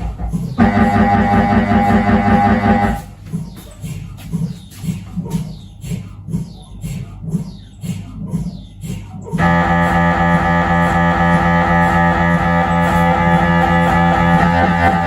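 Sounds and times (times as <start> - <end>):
mri scanner chirps and buzzing: 0.6 - 3.1, 9.4 - 15.0.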